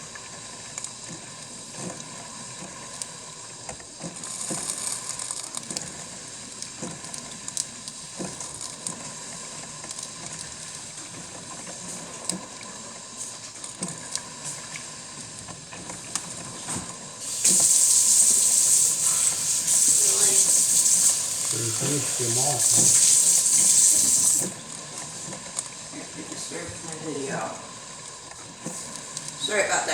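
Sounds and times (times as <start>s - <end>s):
coffee maker crackling and ticking: 17.2s - 24.6s
loud steam hiss: 17.2s - 24.6s.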